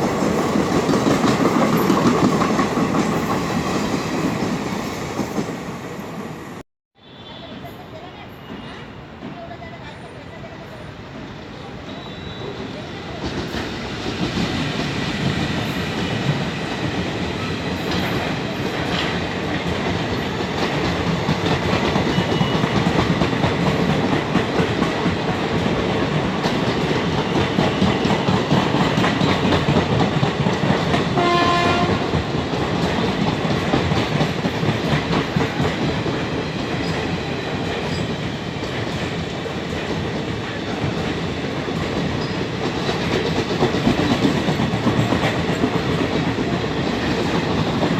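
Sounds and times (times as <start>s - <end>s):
train wheels clattering on rails: 0.0s - 6.4s, 13.1s - 47.9s
train horn blast: 31.1s - 32.1s.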